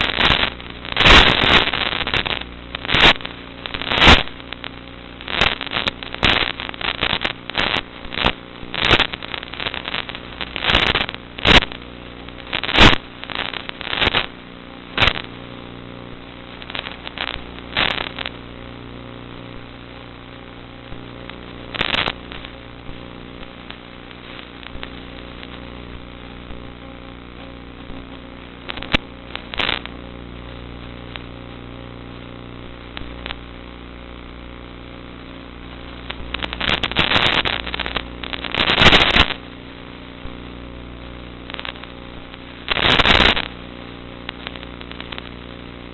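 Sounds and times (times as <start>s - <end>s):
sharp crackles: 0.0s - 45.9s.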